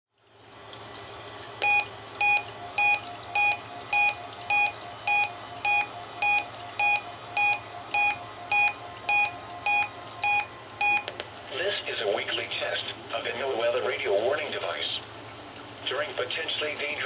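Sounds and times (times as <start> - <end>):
short electronic beeps: 1.6 - 11.1.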